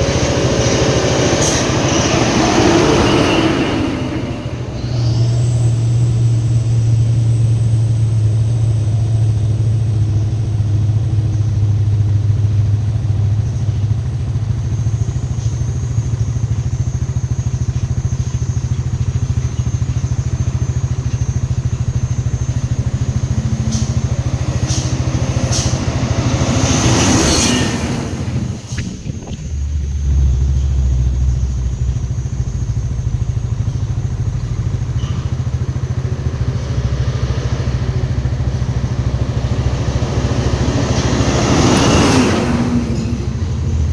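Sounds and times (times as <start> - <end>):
motor vehicle droning: 0.0 - 43.9
rush of noise: 21.5 - 30.8.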